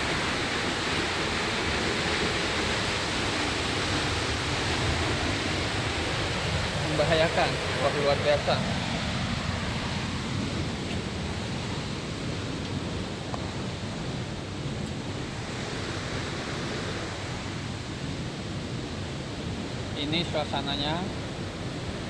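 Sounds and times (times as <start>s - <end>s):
waterfall rushing: 0.0s - 22.0s.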